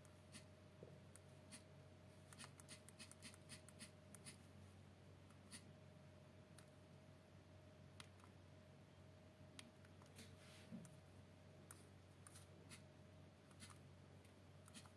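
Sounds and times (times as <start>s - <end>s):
low electrical hum: 0.0s - 14.9s.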